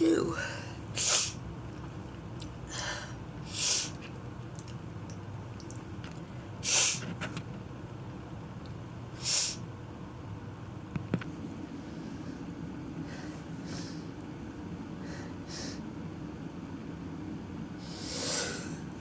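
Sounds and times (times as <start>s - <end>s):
person sneezing: 0.4s - 1.4s
soft breath: 11.8s - 14.1s, 17.8s - 18.9s.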